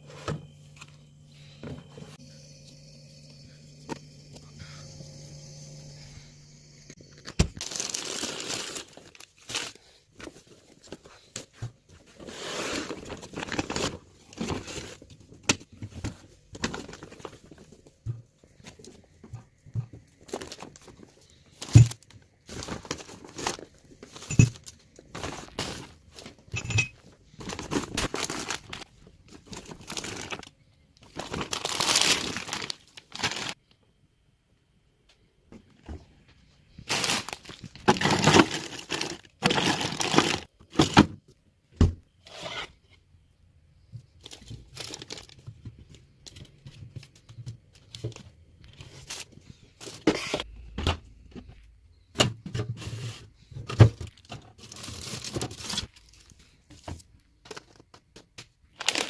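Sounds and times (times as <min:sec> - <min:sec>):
plastic packaging crinkling: 0:07.1 - 0:11.5, 0:20.2 - 0:33.6, 0:36.8 - 0:40.9, 0:44.2 - 0:45.5, 0:54.1 - 0:56.4, 0:58.7 - 0:59.0.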